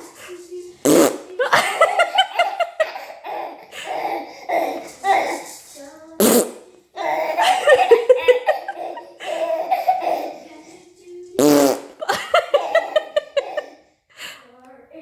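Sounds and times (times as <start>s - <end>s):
baby laughing: 0.0s - 5.6s, 7.0s - 13.9s
fart noises: 0.8s - 1.4s, 6.2s - 6.7s, 11.4s - 12.2s.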